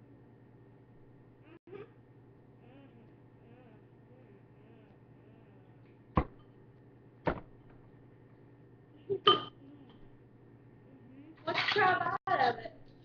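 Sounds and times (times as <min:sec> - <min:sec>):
tableware clinking: 0:09.2 - 0:09.6.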